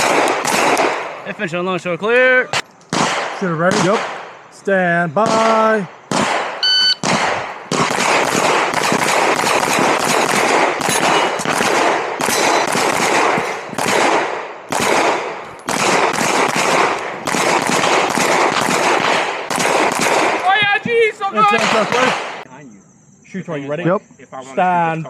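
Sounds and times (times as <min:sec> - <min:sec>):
rapid pistol shots: 0:00.0 - 0:01.2, 0:02.9 - 0:04.5, 0:05.2 - 0:20.5, 0:21.4 - 0:22.5.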